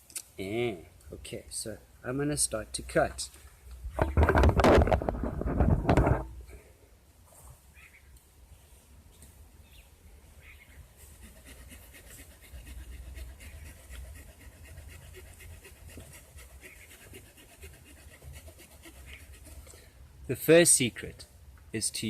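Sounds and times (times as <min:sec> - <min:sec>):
small saw cutting a branch: 0:11.0 - 0:19.7.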